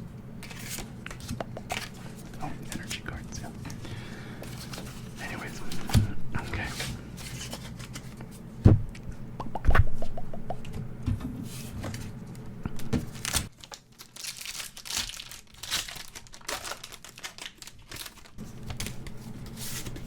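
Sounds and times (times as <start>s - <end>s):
foil wrapper tearing and crinkling: 13.1s - 19.1s.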